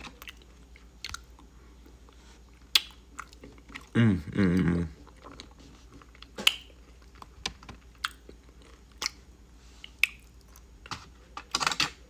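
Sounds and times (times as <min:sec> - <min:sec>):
wet chewing and lip smacks: 0:00.0 - 0:03.9, 0:07.9 - 0:09.2, 0:09.8 - 0:10.7.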